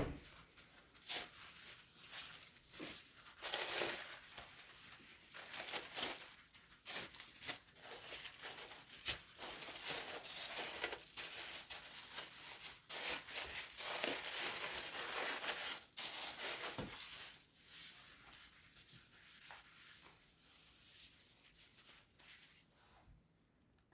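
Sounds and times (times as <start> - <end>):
plastic packaging crinkling: 0.6 - 17.5.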